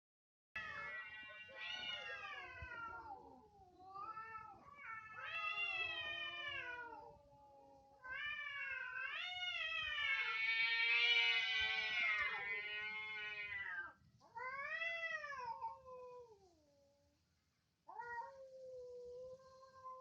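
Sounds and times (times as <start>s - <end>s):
cat yowling: 0.6s - 7.3s, 8.0s - 15.8s.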